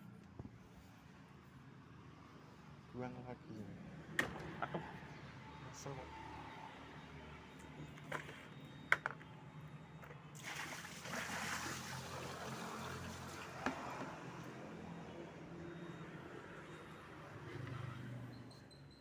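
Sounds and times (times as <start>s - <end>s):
water pouring and splashing: 10.4s - 14.2s.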